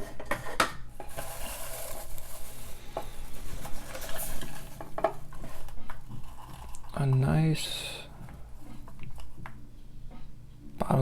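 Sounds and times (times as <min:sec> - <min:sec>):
packaging rustling: 0:00.9 - 0:07.3.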